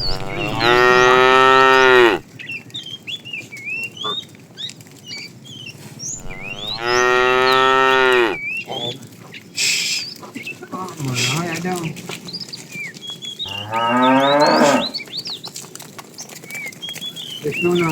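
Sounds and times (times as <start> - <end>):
cows mooing: 0.0 - 2.2, 6.2 - 8.4, 13.5 - 15.0.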